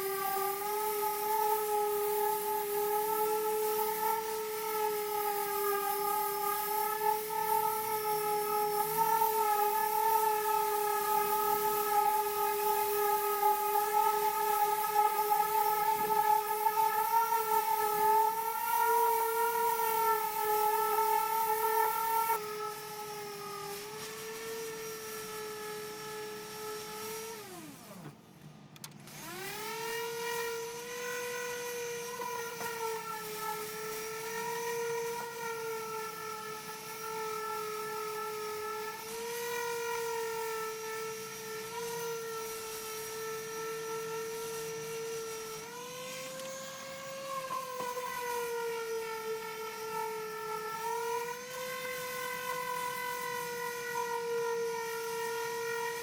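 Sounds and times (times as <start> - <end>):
power sander whining: 0.0 - 56.0.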